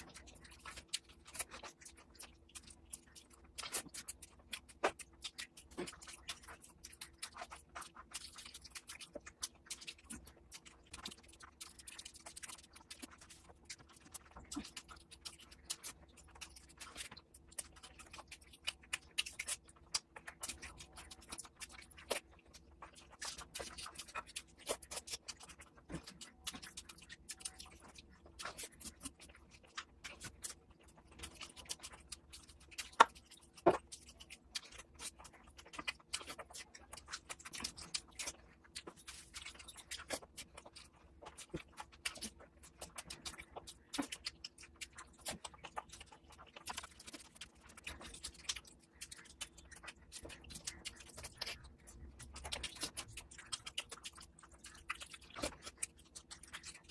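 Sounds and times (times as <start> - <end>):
person chewing food: 0.0 - 56.9.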